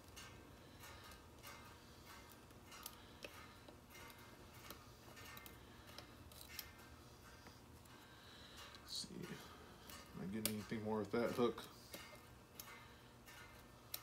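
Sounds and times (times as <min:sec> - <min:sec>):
lock pick clicking and scraping: 0:00.0 - 0:07.0.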